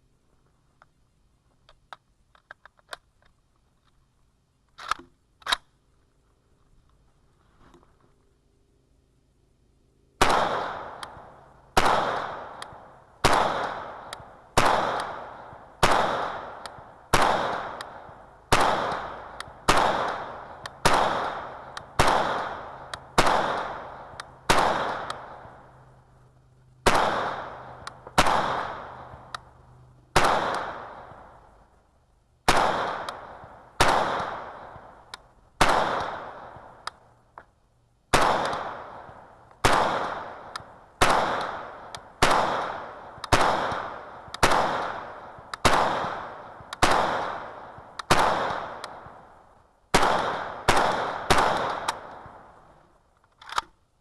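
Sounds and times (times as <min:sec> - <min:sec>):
rifle single shots with echo: 0:10.2 - 0:31.8, 0:32.4 - 0:37.5, 0:38.1 - 0:52.8.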